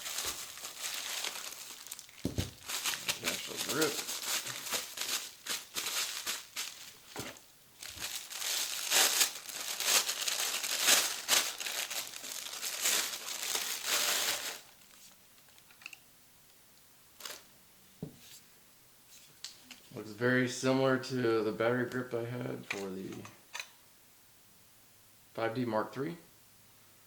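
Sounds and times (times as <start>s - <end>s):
packaging crinkling and rustling: 0.0s - 16.0s, 17.2s - 17.4s.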